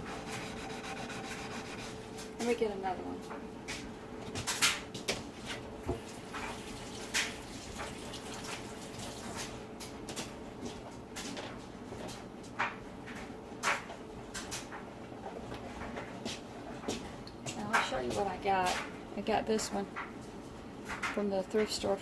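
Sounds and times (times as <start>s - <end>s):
faint steady hum: 0.0s - 9.8s.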